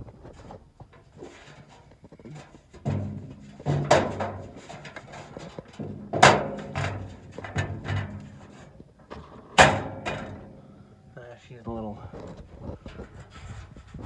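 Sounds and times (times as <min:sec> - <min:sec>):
hard objects clunking and knocking: 0:00.0 - 0:10.8.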